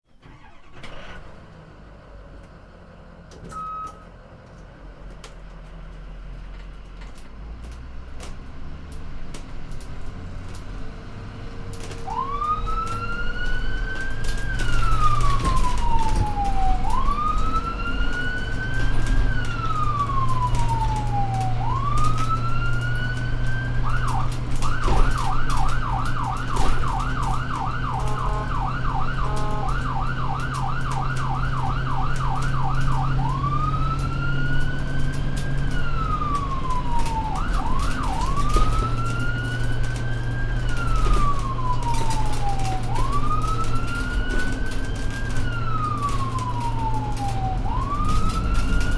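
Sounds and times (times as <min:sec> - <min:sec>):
ambulance engine running: 0:00.0 - 0:48.9
ambulance siren wailing and yelping: 0:00.2 - 0:01.2, 0:11.8 - 0:48.9.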